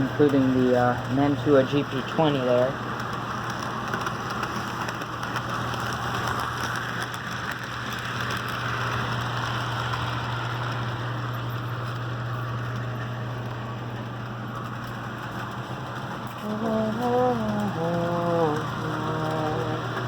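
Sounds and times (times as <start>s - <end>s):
constant low hum: 0.0s - 20.0s
model train whirring: 0.0s - 20.0s.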